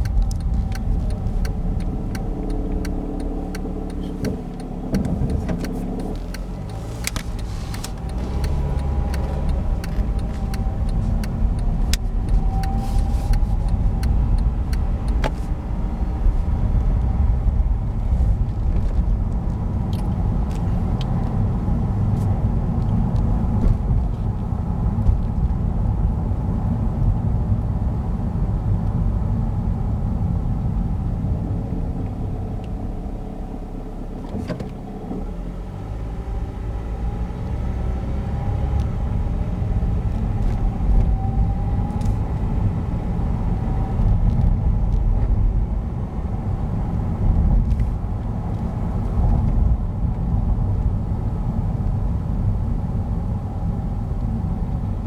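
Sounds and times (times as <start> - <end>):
sharp engine ticks: 0.0 - 15.3
car engine running with rattle: 0.0 - 55.0.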